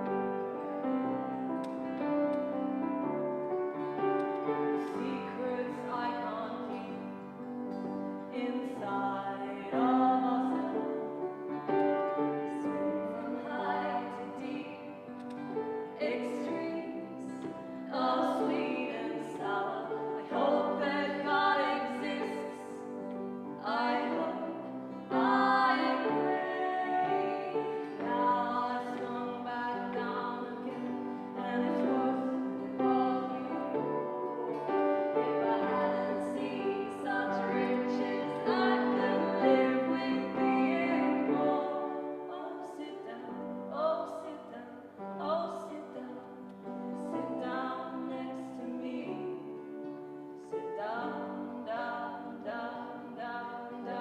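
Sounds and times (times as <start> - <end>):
woman singing slow song: 4.8 - 7.3, 8.2 - 11.2, 12.5 - 15.1, 15.8 - 54.0
instrumental accompaniment: 10.5 - 42.7.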